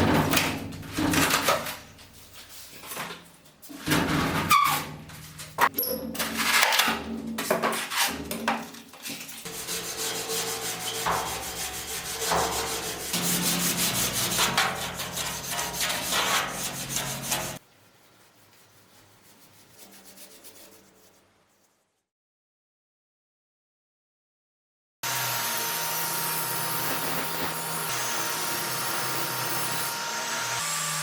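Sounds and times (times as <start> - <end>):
wood being sanded: 9.5 - 17.6, 25.1 - 31.0.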